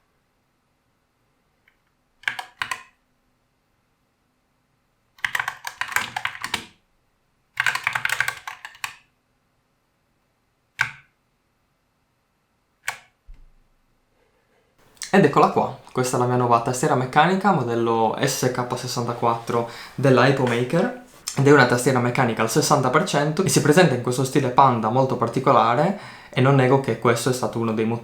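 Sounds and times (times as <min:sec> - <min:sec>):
mechanical keyboard typing: 0:02.2 - 0:02.9, 0:05.2 - 0:06.7, 0:07.6 - 0:09.0.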